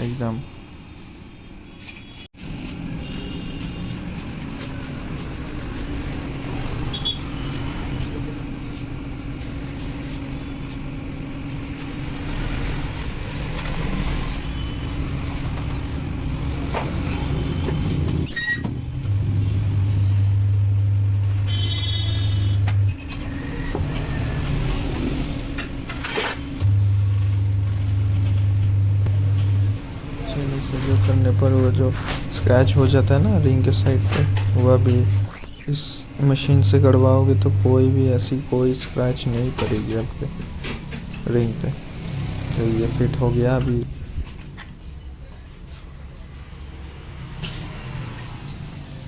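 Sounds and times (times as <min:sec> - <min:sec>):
tyre changer motor droning: 0:18.9 - 0:35.3.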